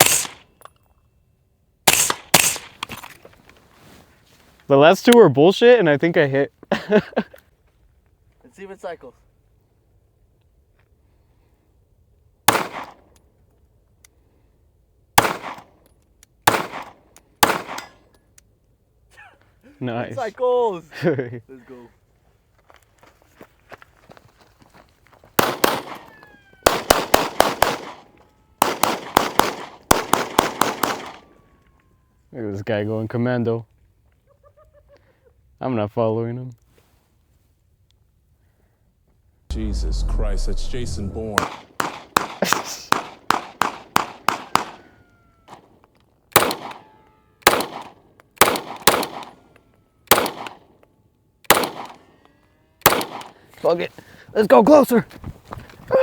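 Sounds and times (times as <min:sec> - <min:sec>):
rifle shots: 0:00.0 - 0:00.4, 0:01.9 - 0:02.8, 0:12.5 - 0:13.0, 0:15.2 - 0:15.6, 0:16.5 - 0:17.9, 0:25.4 - 0:26.1, 0:26.7 - 0:31.2, 0:39.5 - 0:44.8, 0:46.3 - 0:46.8, 0:47.4 - 0:49.4, 0:50.1 - 0:50.6, 0:51.5 - 0:52.0, 0:52.8 - 0:53.4.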